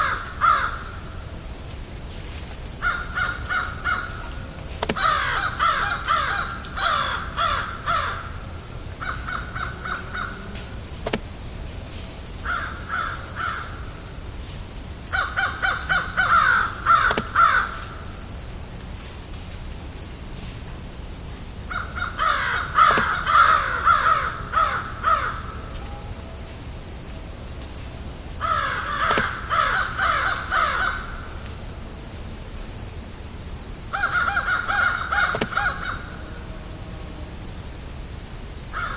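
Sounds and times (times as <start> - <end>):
crows cawing: 0.0 - 1.0, 2.8 - 4.4, 5.0 - 8.4, 9.0 - 10.5, 12.4 - 13.8, 15.1 - 18.0, 21.7 - 25.7, 28.4 - 31.4, 33.9 - 36.3
steady high-pitched hiss: 0.0 - 38.9.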